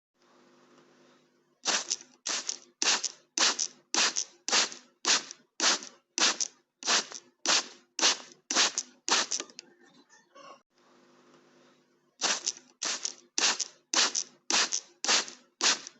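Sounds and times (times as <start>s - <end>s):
spray bottle squirting water: 1.6s - 9.5s, 12.2s - 15.9s.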